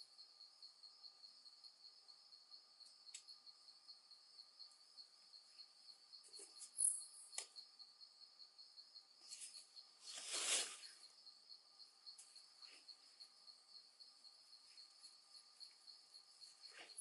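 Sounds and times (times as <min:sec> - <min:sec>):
insects chirring: 0:00.0 - 0:17.0
faint clicks: 0:03.1 - 0:03.3
short rustle: 0:09.3 - 0:11.0.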